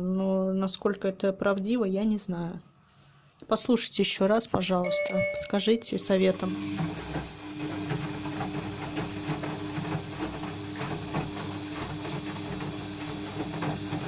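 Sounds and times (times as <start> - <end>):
washing machine drum humming: 4.8 - 14.0.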